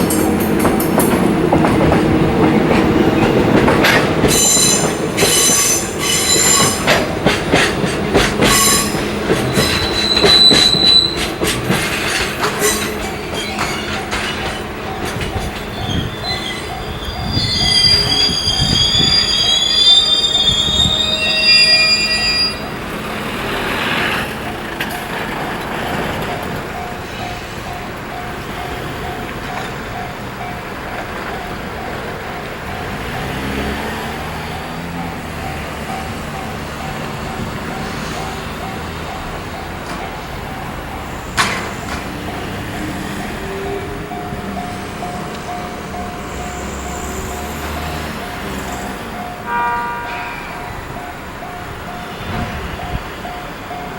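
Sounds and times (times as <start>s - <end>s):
dull knocks from train wheels: 0.0s - 16.1s, 41.3s - 43.0s
train wheels squealing on rails: 0.0s - 53.9s.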